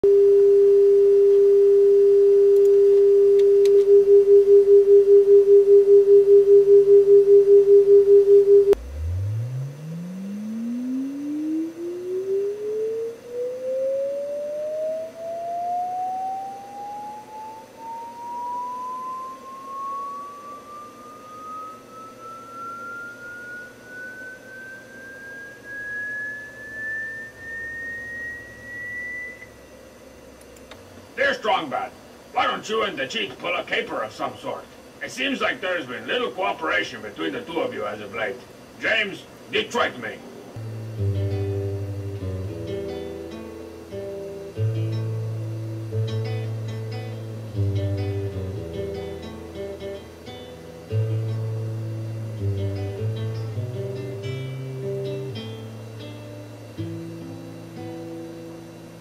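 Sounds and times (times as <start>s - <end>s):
pulsing sine tone: 0.0s - 30.4s, 40.3s - 59.0s
tone sweeping upward: 8.7s - 29.7s.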